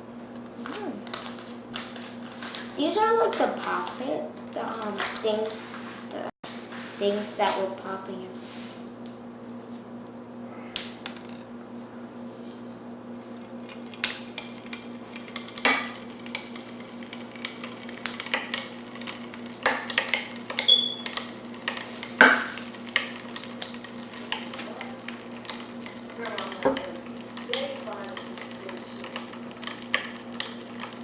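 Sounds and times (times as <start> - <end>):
crystals crackling in water: 13.2 - 31.0.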